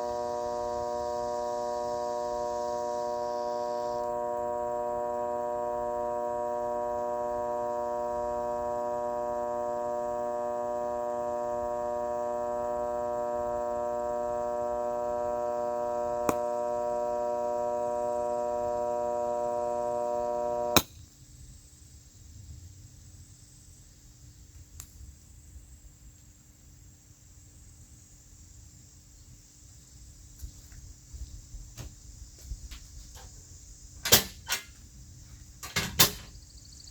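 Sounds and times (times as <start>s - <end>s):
steady electronic drone: 0.0s - 20.8s
click: 16.2s - 16.4s.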